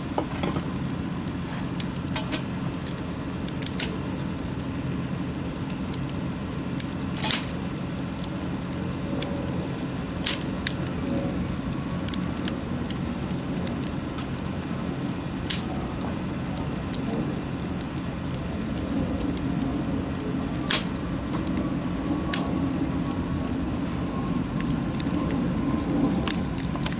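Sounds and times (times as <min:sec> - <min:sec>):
bonfire crackling: 0:00.0 - 0:26.9
low fire rush: 0:00.0 - 0:26.9
sharp fire pops: 0:00.0 - 0:26.9.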